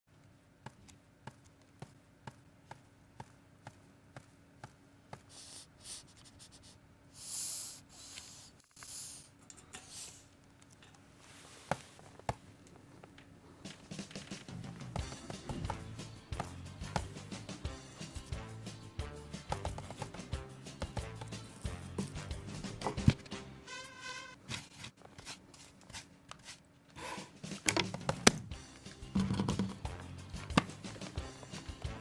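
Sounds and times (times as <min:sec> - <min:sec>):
rustling brushing noises: 0:11.1 - 0:12.2, 0:23.8 - 0:26.6.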